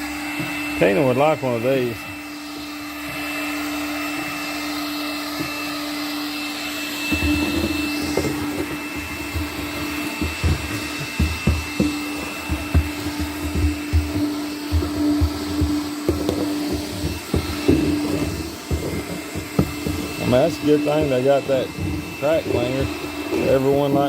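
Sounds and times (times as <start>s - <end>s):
handheld vacuum running: 0.0s - 24.0s
low knocks and bumps: 7.1s - 20.4s.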